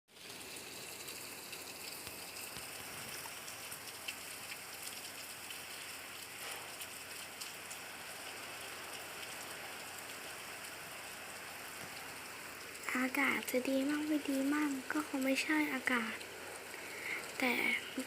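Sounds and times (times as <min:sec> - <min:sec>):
steady rain falling: 0:00.1 - 0:18.0.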